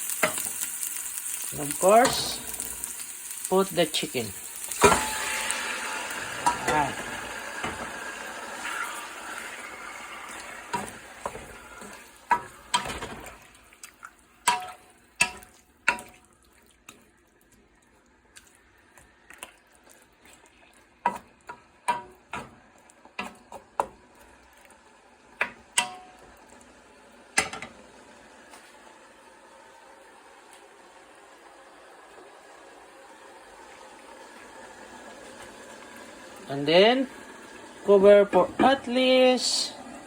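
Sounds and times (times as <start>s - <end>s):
utensil stirring in pan: 0.0s - 27.8s
chicken sizzling in oil: 0.0s - 40.0s.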